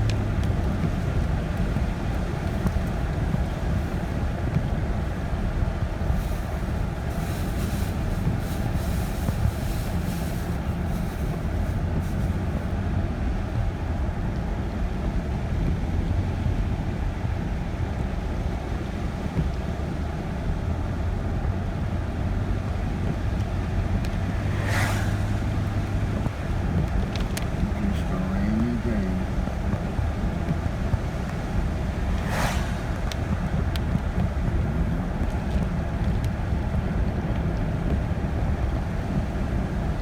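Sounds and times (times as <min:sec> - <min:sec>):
car engine and tyre rumble: 0:00.0 - 0:40.0
hissing swish: 0:24.3 - 0:26.0, 0:31.8 - 0:33.5.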